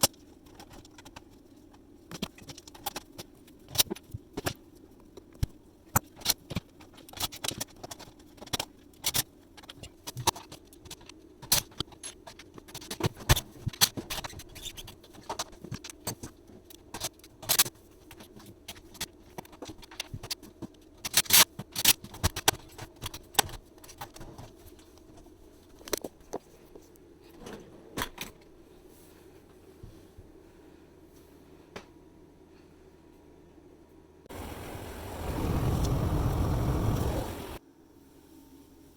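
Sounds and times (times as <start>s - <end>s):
steady low hum: 28.3s - 38.9s.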